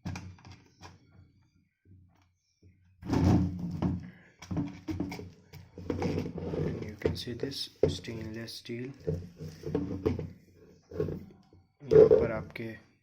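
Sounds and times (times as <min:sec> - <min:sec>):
plastic kettle knocking and scraping: 0:03.0 - 0:08.3, 0:09.0 - 0:11.3, 0:11.9 - 0:12.5.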